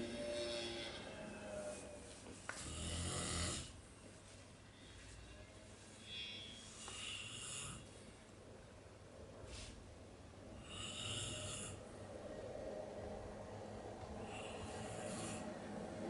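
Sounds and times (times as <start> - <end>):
person snoring: 0.0 - 1.8, 2.6 - 3.8, 6.8 - 7.9, 10.6 - 11.8, 14.2 - 15.6.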